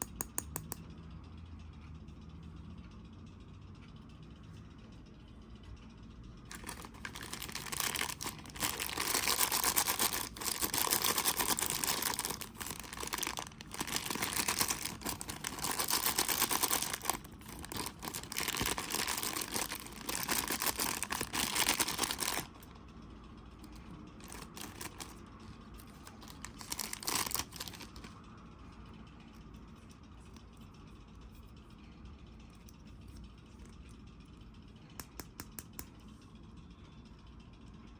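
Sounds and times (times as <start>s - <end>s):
packaging being torn and crumpled: 6.5s - 22.6s, 24.2s - 25.2s, 25.8s - 28.1s.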